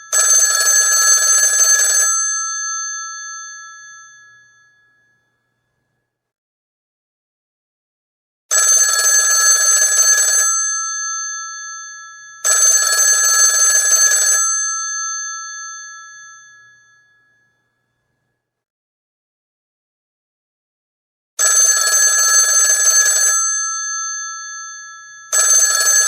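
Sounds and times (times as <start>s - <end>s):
rotary telephone bell ringing: 0.0s - 5.4s, 8.5s - 17.8s, 21.4s - 26.0s.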